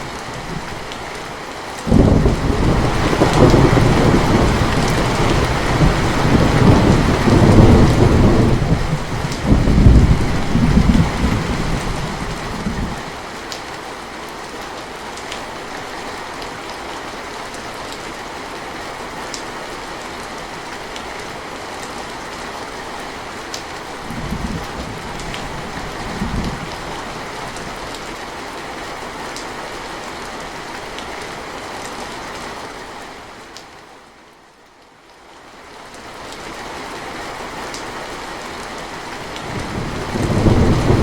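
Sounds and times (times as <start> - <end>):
steady rainfall: 0.0 - 41.0
thunder rumbling: 1.9 - 13.1, 24.0 - 27.8, 39.4 - 41.0.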